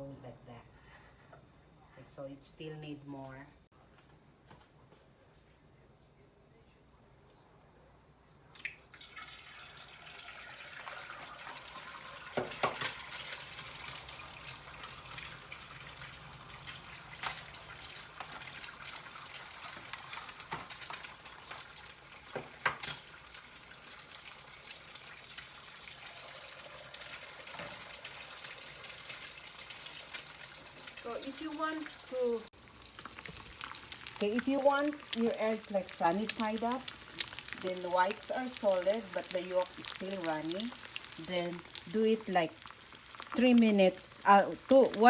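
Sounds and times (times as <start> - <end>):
eggs sizzling in a pan: 9.0 - 45.0.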